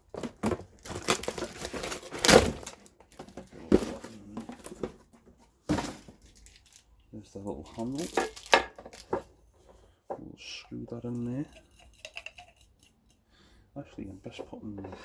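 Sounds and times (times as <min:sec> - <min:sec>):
packaging rustling and crinkling: 0:00.0 - 0:05.1, 0:05.7 - 0:06.9, 0:07.6 - 0:09.3.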